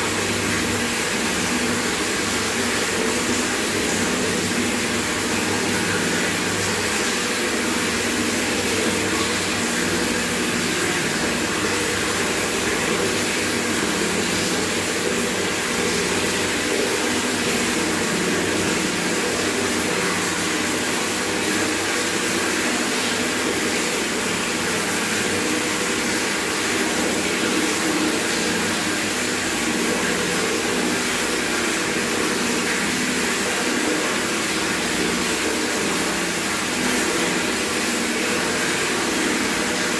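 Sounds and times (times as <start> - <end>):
tap water pouring into bucket: 0.0 - 39.9.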